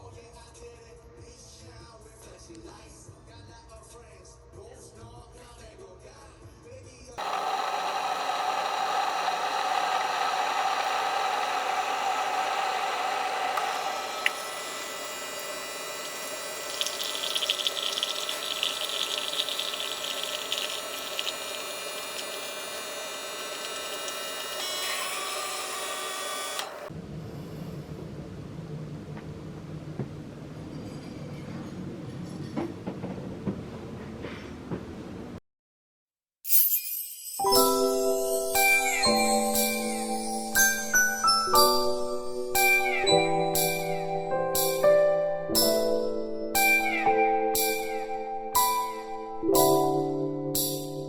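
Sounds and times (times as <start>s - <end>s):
small electric motor running: 7.2s - 26.9s.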